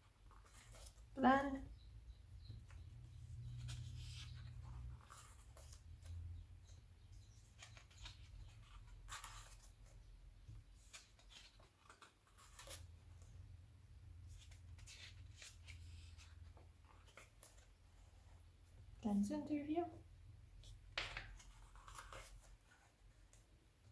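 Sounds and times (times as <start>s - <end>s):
magazine pages turning: 10.6s - 13.2s, 20.6s - 23.4s.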